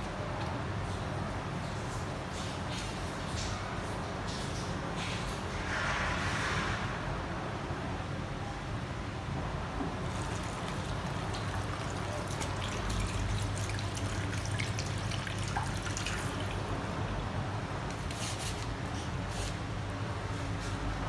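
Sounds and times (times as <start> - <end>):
water running from a tap: 9.9 - 17.2
splashes and drips: 9.9 - 18.6.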